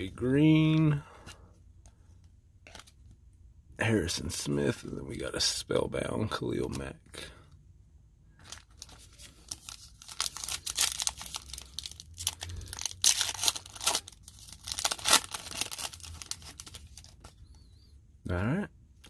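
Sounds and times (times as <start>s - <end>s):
foil wrapper tearing and crinkling: 8.5s - 17.2s.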